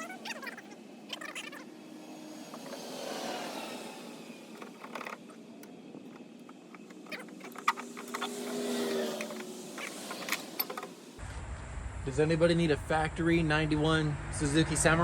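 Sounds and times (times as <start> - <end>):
highway traffic passing: 0.0 - 15.0
parts handling clicks and knocks: 4.5 - 11.0.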